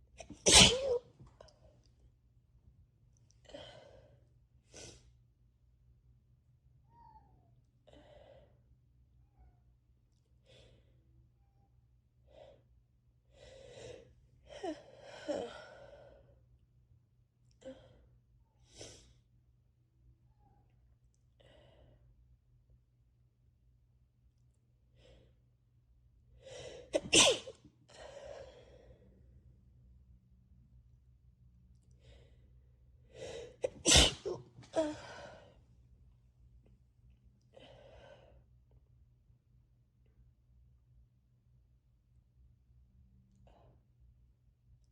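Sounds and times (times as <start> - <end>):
person sneezing: 0.2 - 1.1, 26.9 - 27.6, 33.6 - 35.2.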